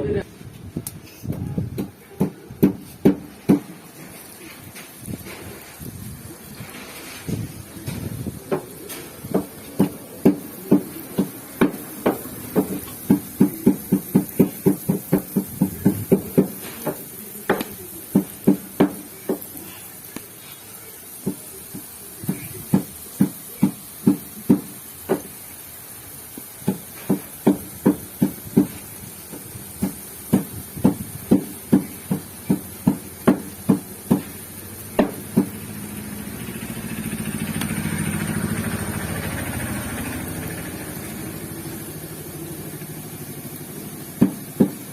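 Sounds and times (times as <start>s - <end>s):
vehicle engine: 5.2s - 17.2s, 34.4s - 44.9s.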